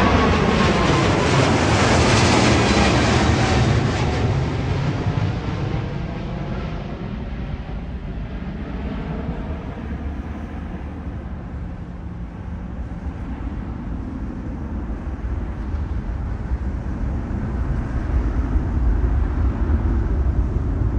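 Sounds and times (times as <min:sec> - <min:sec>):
jet engines rumbling at takeoff: 0:00.0 - 0:20.9.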